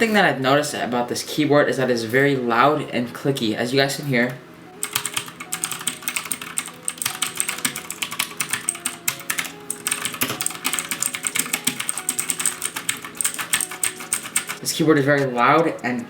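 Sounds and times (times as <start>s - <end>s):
rapid typing on mechanical keyboard: 4.8s - 16.0s.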